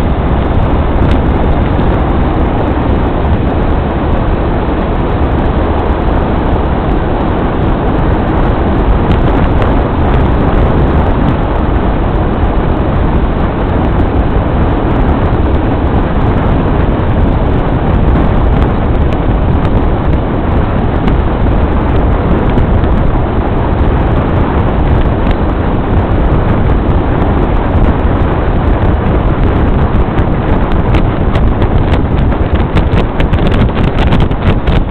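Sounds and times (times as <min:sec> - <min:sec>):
vehicle road and wind noise: 0:00.0 - 0:34.9.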